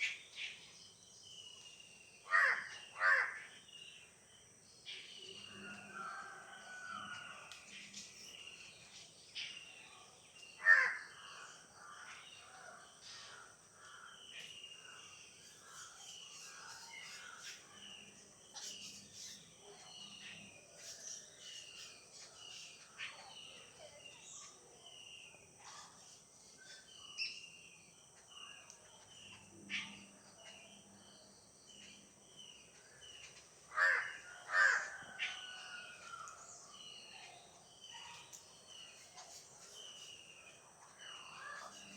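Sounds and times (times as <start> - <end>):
small birds chirping: 0.0 - 5.8, 7.2 - 41.9
crows cawing: 2.3 - 3.5, 10.6 - 11.2, 33.7 - 35.4.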